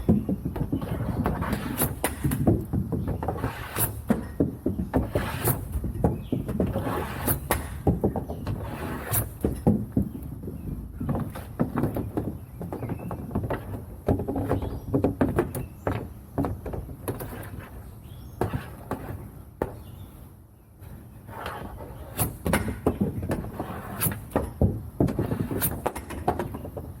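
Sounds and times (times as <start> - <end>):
hockey stick and puck clacking: 0.0 - 10.0, 21.3 - 27.0.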